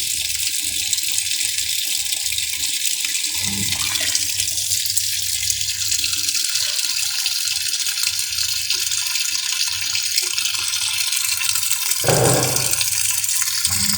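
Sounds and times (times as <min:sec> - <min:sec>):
water rushing in washing machine: 0:03.1 - 0:11.0, 0:12.0 - 0:13.9.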